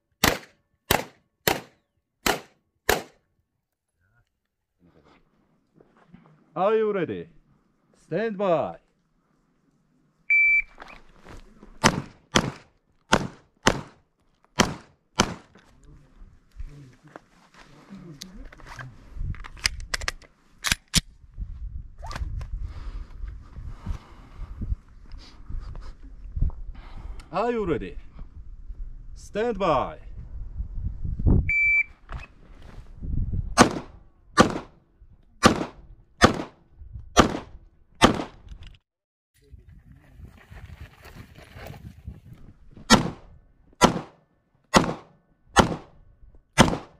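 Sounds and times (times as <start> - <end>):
pistol shots: 0.2 - 3.2, 11.8 - 14.0, 14.6 - 15.5, 33.6 - 34.8, 35.4 - 36.6, 37.2 - 38.4, 42.9 - 43.2, 43.8 - 45.9, 46.6 - 46.9
shot timer beep: 31.5 - 31.9.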